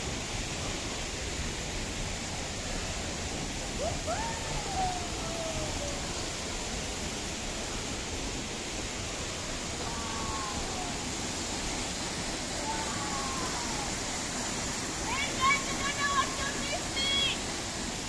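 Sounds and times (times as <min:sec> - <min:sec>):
waterfall roaring: 0:00.0 - 0:18.0.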